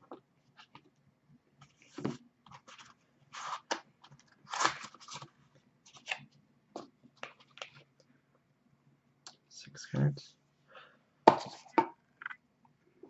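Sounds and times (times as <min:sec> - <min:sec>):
card packaging crinkling: 0:02.5 - 0:05.3.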